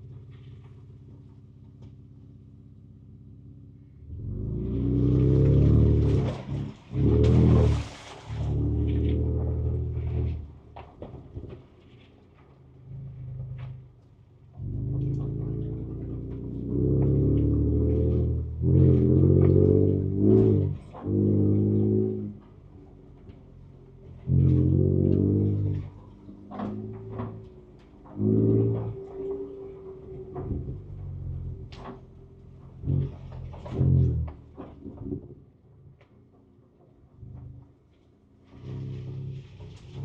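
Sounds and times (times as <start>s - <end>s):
engine revving: 2.9s - 10.6s, 14.6s - 34.8s.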